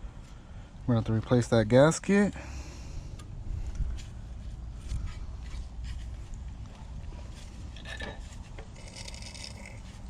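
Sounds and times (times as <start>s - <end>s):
low steady hum: 0.0s - 10.0s
metal engine parts clinking: 7.7s - 10.0s.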